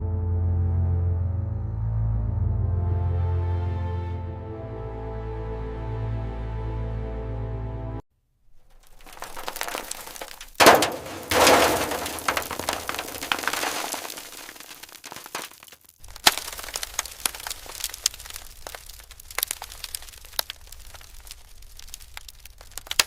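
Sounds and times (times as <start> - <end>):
sharp crack: 8.6 - 23.0.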